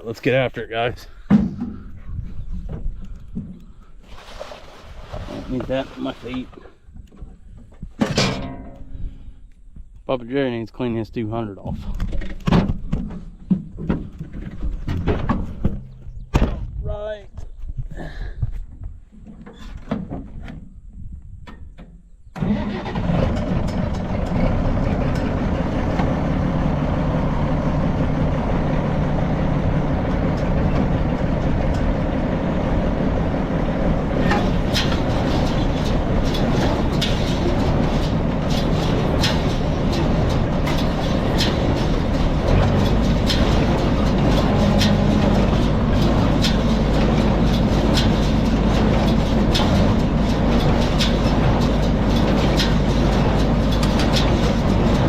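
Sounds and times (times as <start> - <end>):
tractor engine running: 22.4 - 55.0
clattering knocks: 34.0 - 55.0.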